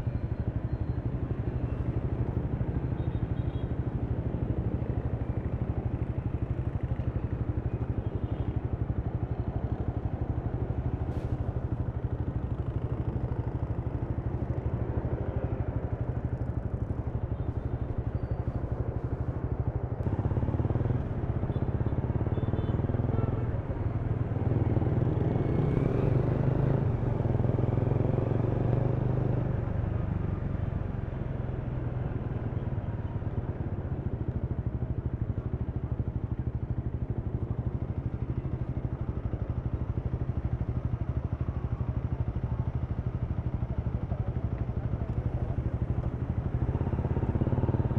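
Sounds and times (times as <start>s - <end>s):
motorcycle engine running: 20.0s - 47.9s.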